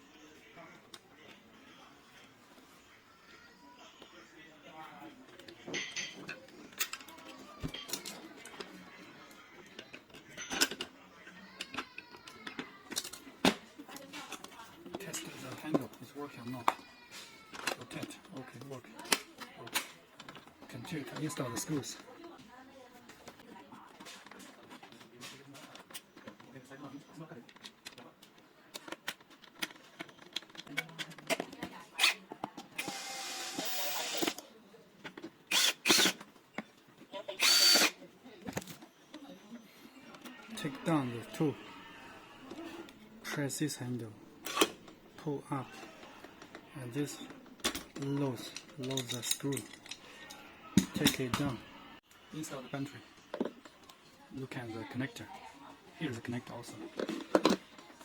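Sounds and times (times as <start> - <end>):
faint background music: 0.0 - 58.0
electric screwdriver motor: 32.8 - 34.4, 35.5 - 36.2, 37.4 - 37.9
lock parts clicking and knocking: 47.2 - 51.6.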